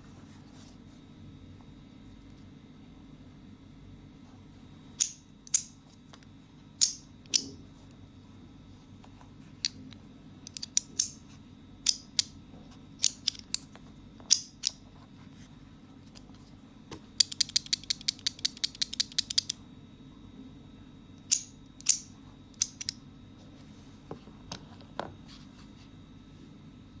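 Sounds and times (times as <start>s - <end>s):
fidget toy metallic clicks: 5.0s - 5.7s, 10.5s - 11.2s, 13.0s - 13.7s, 17.2s - 19.6s, 21.3s - 23.0s.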